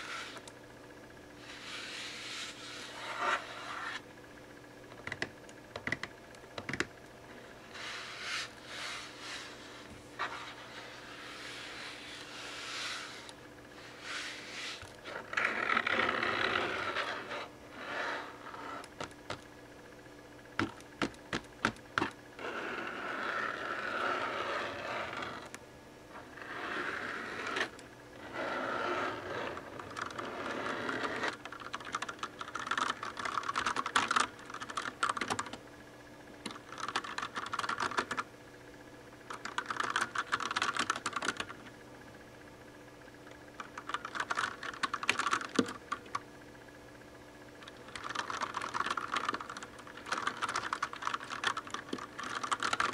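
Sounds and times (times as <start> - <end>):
scratching and rubbing: 0.0 - 0.4, 1.4 - 4.0, 7.4 - 19.4, 22.0 - 25.5, 26.1 - 31.4
rapid keyboard key tapping: 5.0 - 6.9, 19.0 - 19.5, 20.6 - 22.2, 29.9 - 30.2, 31.0 - 35.6, 36.4 - 38.2, 39.3 - 41.6, 43.6 - 46.2, 47.6 - 52.9.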